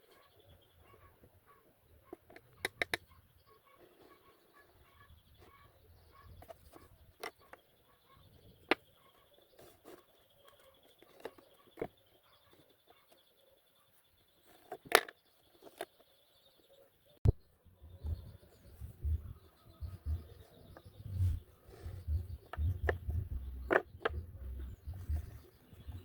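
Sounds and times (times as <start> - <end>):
faint high chirping: 0.0 - 26.0
sharp knocks and taps: 22.1 - 25.4.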